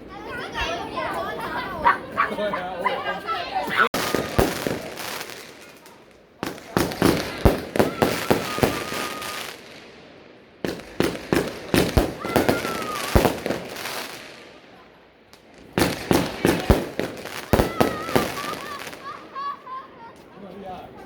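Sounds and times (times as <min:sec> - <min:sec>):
fireworks cracking and banging: 0:03.7 - 0:20.3.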